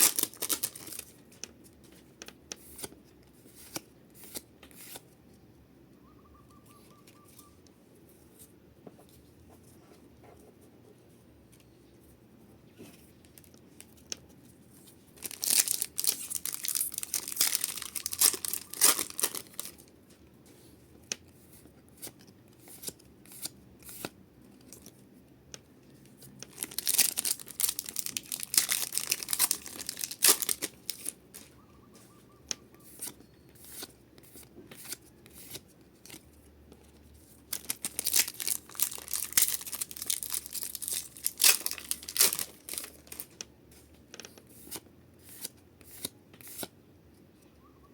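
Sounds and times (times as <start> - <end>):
foil wrappers tearing and crinkling: 0.0 - 1.1, 15.2 - 19.9, 26.5 - 31.4, 37.5 - 43.4.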